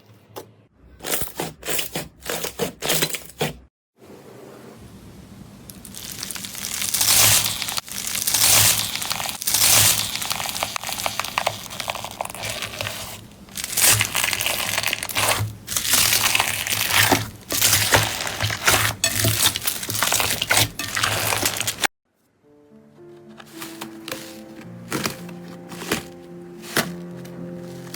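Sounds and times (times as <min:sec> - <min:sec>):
slime crackling when squeezed: 0:05.7 - 0:21.9.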